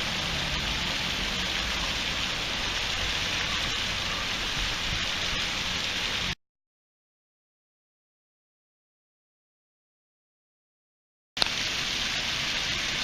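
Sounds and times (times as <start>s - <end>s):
water rushing down waterfall: 0.0s - 6.4s, 11.4s - 13.0s.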